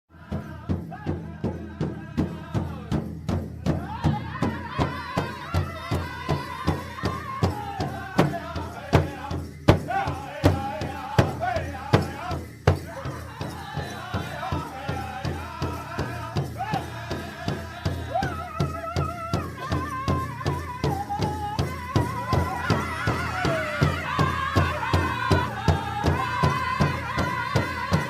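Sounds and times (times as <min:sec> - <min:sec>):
steady drum beat: 0:00.1 - 0:28.0
group of voices chanting: 0:22.3 - 0:28.0.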